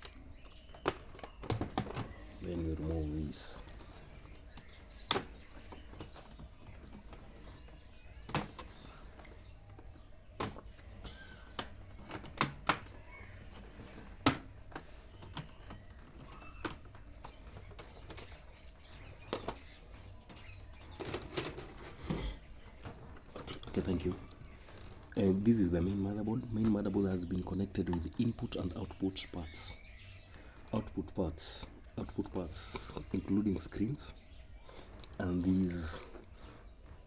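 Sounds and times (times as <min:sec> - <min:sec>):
plastic laptop parts clicking: 0:10.4 - 0:18.4.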